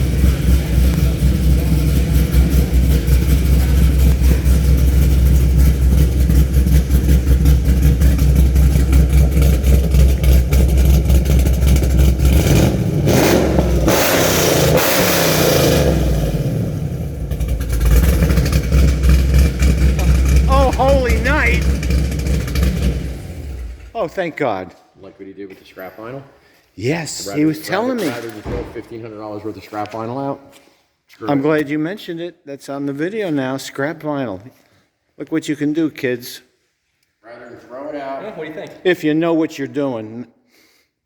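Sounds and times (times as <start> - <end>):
car engine idling and revving: 0.0 - 24.0.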